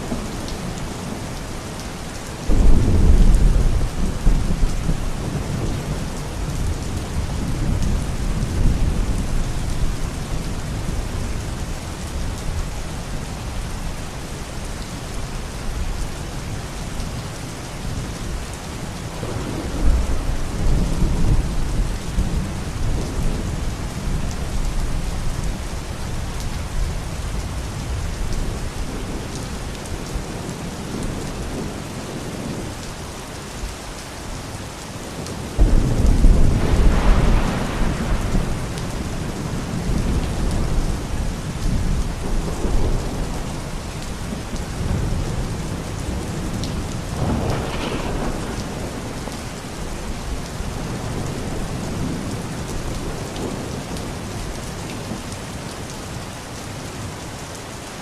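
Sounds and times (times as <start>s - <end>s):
steady rain falling: 0.0s - 58.0s
thunder clap and rumble: 2.5s - 12.6s, 19.0s - 25.5s, 35.1s - 54.1s.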